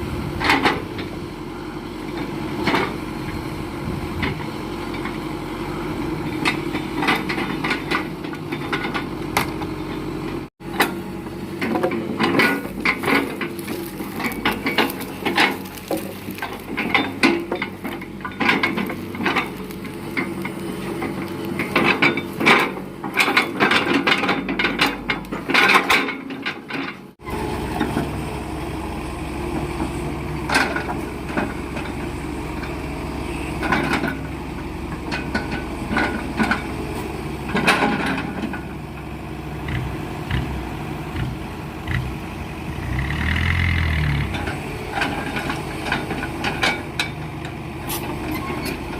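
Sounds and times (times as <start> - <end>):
heavy machinery engine running: 0.0 - 48.9
wood logs knocking and clattering: 11.6 - 27.2.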